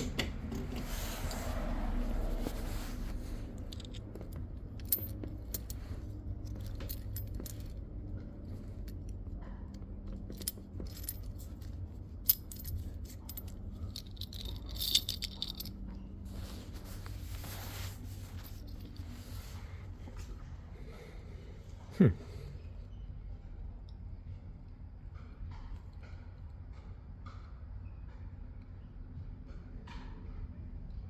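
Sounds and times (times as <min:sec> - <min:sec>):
keys jangling: 0:00.5 - 0:19.6.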